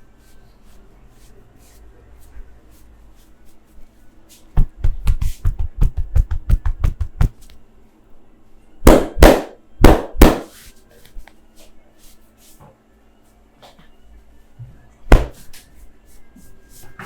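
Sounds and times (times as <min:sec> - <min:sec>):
hands striking body: 0:04.6 - 0:07.4, 0:08.9 - 0:10.5, 0:15.1 - 0:15.4.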